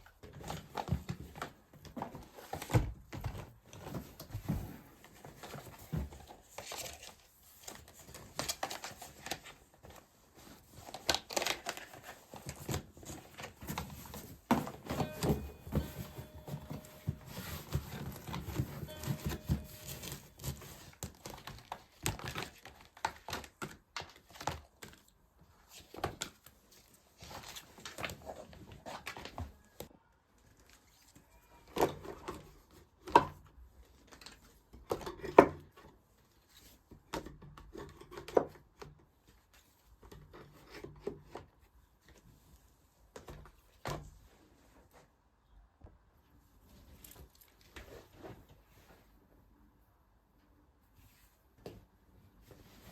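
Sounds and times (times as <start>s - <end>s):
rustling: 0.1s - 23.5s.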